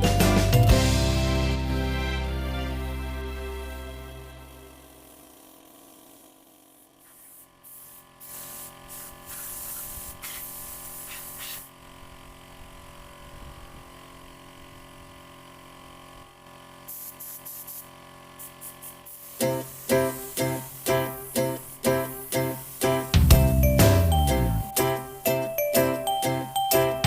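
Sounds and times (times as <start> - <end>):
air spray gun hissing: 4.8 - 11.8, 16.8 - 23.2.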